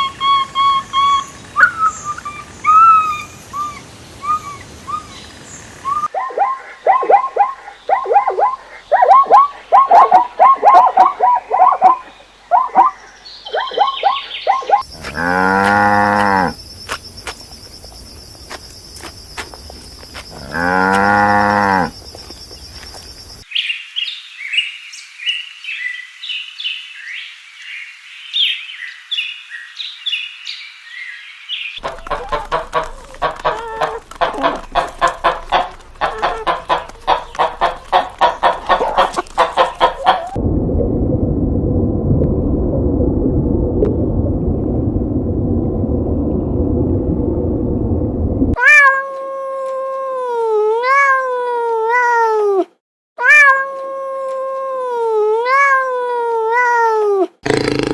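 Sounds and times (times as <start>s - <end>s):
high bird chirping: 0.0s - 8.2s, 9.1s - 15.1s
cow mooing: 15.0s - 16.6s, 20.4s - 21.9s
short repeated animal calls: 31.8s - 40.4s.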